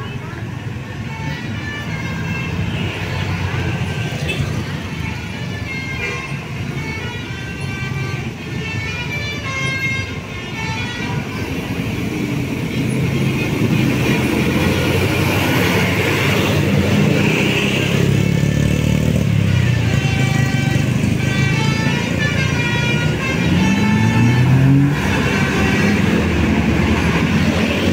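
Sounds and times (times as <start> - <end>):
bus engine: 0.0 - 27.9
road noise: 0.0 - 27.9
musical bus horn tune: 0.9 - 11.8, 18.9 - 27.9.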